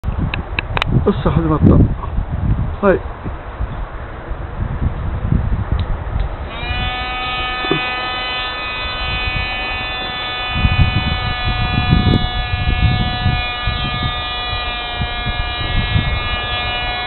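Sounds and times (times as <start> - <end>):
small electric motor whining: 6.5 - 17.0.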